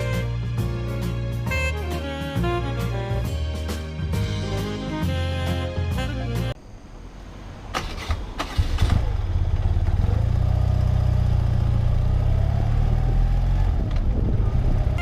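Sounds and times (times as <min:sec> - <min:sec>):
motorcycle engine running: 0:08.6 - 0:15.0.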